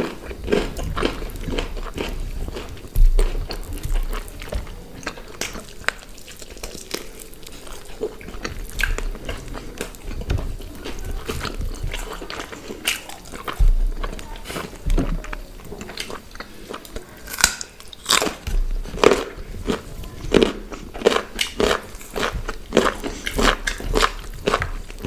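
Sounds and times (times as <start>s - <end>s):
people chewing food: 0.0s - 25.0s
wet clicks and crunches: 15.0s - 25.0s.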